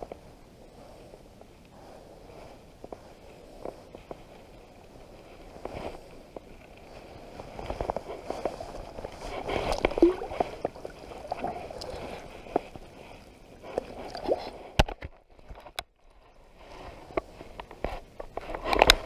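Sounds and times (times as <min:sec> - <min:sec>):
water sloshing and splashing: 0:08.1 - 0:14.9.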